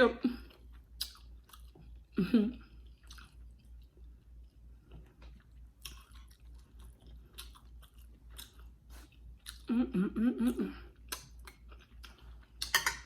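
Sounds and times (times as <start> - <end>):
wet chewing: 0.5 - 2.1, 2.7 - 9.7.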